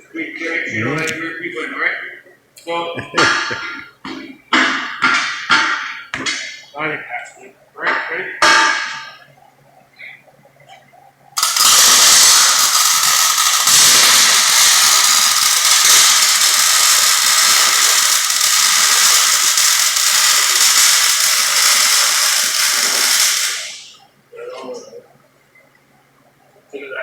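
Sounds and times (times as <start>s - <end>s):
welding arc crackling hiss: 3.0s - 3.9s, 11.4s - 24.1s.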